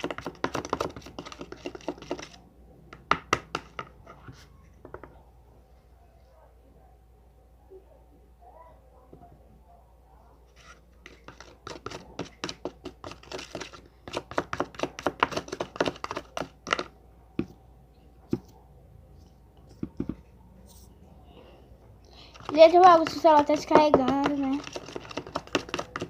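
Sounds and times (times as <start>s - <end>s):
slime stirred in a bowl: 0.0s - 2.5s, 10.4s - 17.6s, 22.2s - 26.0s.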